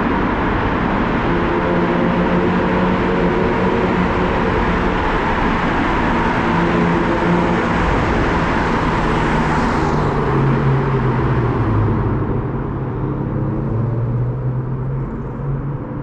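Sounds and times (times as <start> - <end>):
low car exhaust note: 0.0 - 9.6.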